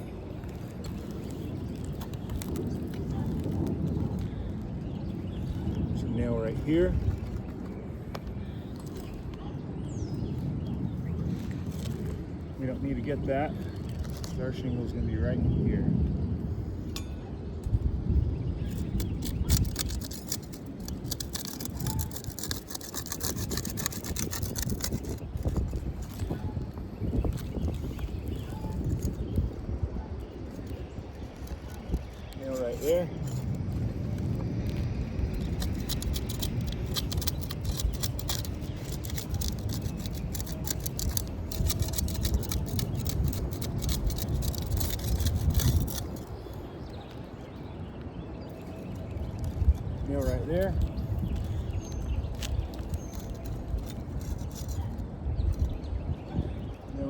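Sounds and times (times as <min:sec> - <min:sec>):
shingles crackling and scraping: 0:00.0 - 0:57.0
scraping on roof shingles: 0:18.6 - 0:29.8, 0:30.4 - 0:47.2.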